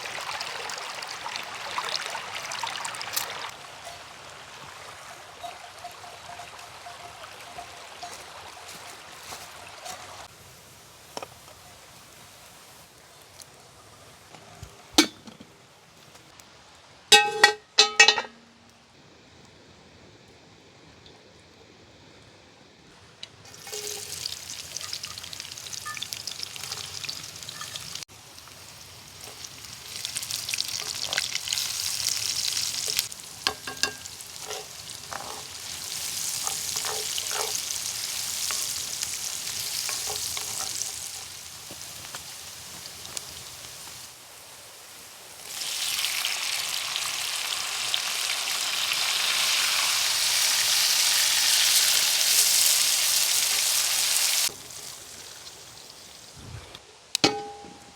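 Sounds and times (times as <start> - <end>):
food sizzling in a pan: 0.0 - 14.3, 23.5 - 56.5.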